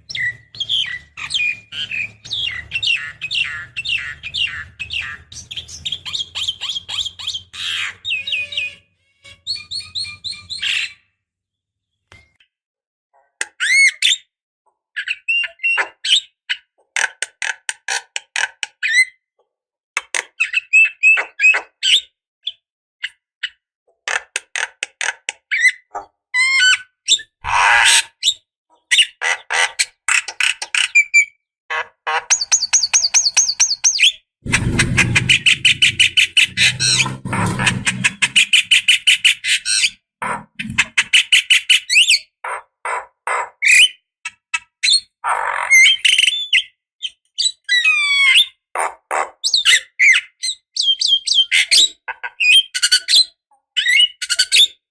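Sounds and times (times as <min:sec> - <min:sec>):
bird chattering song: 0:00.0 - 0:08.8, 0:32.3 - 0:40.0.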